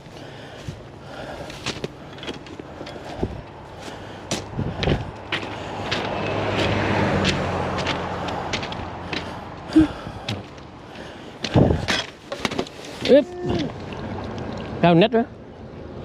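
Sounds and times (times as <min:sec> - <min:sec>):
engine running: 0:00.0 - 0:11.9.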